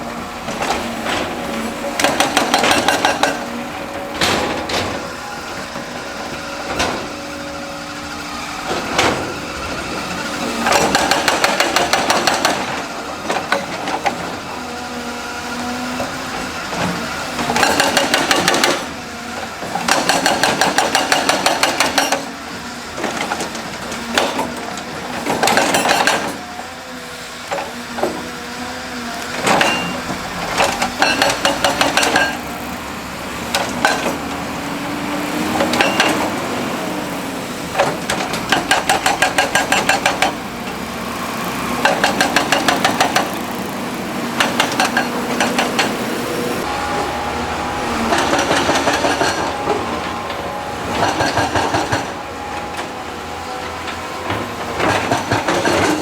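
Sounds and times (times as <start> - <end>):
construction machinery engine: 0.0 - 56.0
rapid hammering clatter: 0.5 - 5.0, 10.6 - 14.2, 17.4 - 19.0, 19.7 - 22.3, 29.4 - 32.4, 37.7 - 40.4, 41.8 - 43.6, 44.3 - 46.1.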